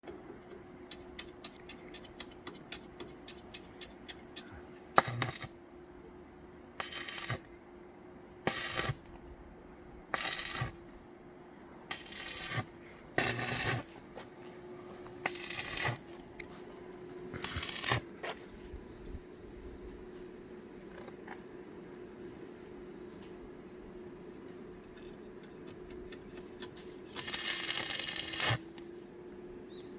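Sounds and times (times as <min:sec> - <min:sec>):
steady low hum: 0:00.1 - 0:29.9
crackling welding arc: 0:05.0 - 0:05.6, 0:06.7 - 0:07.5, 0:08.4 - 0:09.2, 0:10.1 - 0:11.0, 0:11.9 - 0:13.9, 0:15.2 - 0:16.1, 0:17.3 - 0:18.2, 0:27.1 - 0:28.8.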